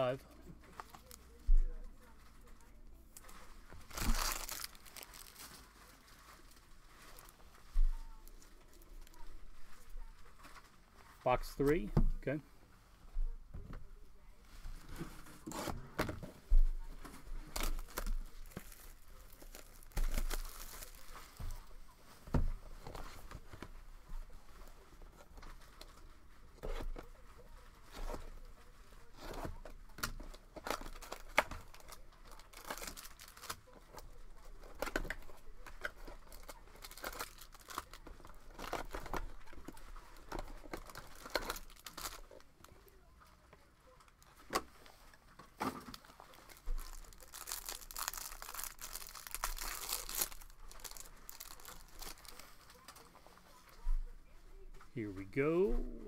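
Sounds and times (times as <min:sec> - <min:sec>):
cards and wrappers rustling: 0:00.0 - 0:12.4, 0:14.4 - 0:53.8
packaging tearing and crinkling: 0:03.2 - 0:07.4, 0:17.5 - 0:21.5, 0:29.4 - 0:34.0, 0:34.6 - 0:42.4, 0:45.9 - 0:53.1.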